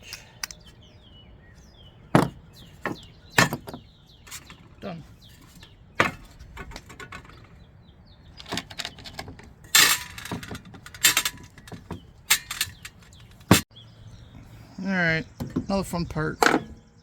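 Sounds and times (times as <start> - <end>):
metal tools clinking: 2.2 - 7.6, 8.4 - 13.7.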